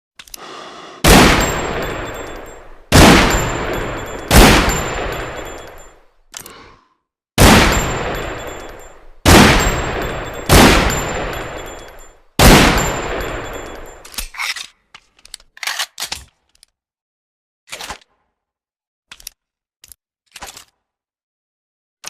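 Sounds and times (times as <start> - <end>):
pistol shots echoing: 1.0 - 5.9, 7.4 - 14.0.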